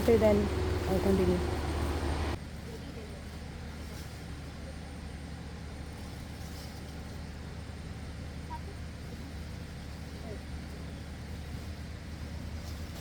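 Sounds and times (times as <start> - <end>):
low background rumble: 0.0 - 3.8.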